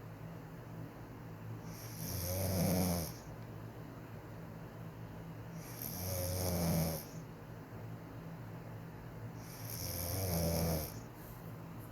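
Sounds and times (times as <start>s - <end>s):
woman snoring: 1.7s - 3.3s, 5.6s - 7.2s, 9.4s - 11.0s.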